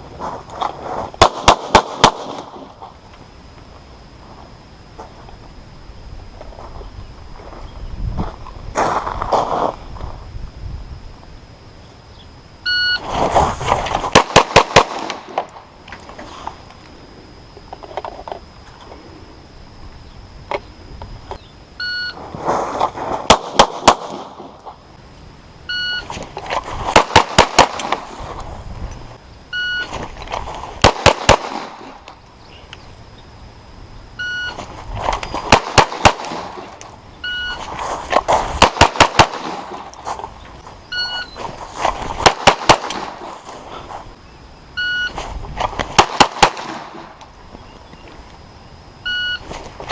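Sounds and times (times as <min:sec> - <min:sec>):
pistol shots: 0:01.2 - 0:02.7, 0:14.1 - 0:15.5, 0:23.3 - 0:24.6, 0:26.9 - 0:28.1, 0:30.8 - 0:32.0, 0:35.5 - 0:36.8, 0:38.6 - 0:39.8, 0:42.2 - 0:43.2, 0:45.9 - 0:47.1
shot timer beep: 0:40.9 - 0:41.4.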